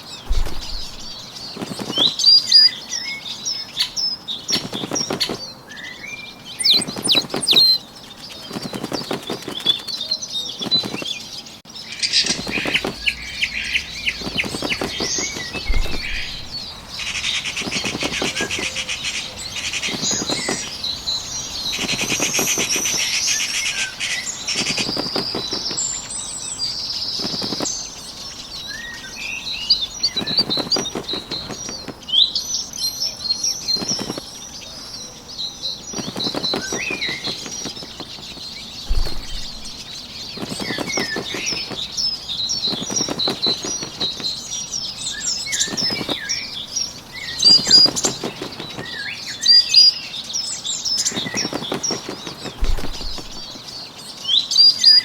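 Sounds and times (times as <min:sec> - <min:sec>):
bird wings flapping: 0:00.0 - 0:03.1, 0:03.8 - 0:05.6, 0:06.6 - 0:28.8, 0:29.6 - 0:32.3, 0:33.3 - 0:35.0, 0:35.8 - 0:49.9, 0:50.8 - 0:53.8
songbirds chirping: 0:00.0 - 0:55.0.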